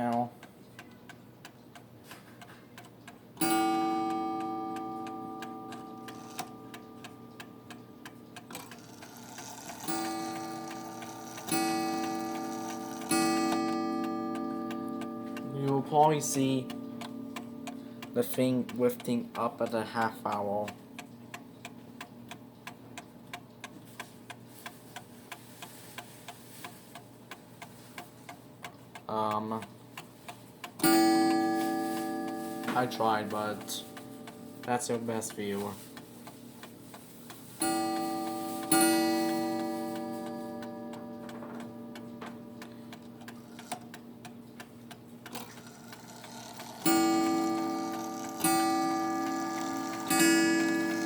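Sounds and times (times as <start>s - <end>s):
clock ticking: 0.0s - 51.0s
clock strike ringing: 3.4s - 20.4s, 30.8s - 35.6s, 37.6s - 44.3s, 45.3s - 51.0s.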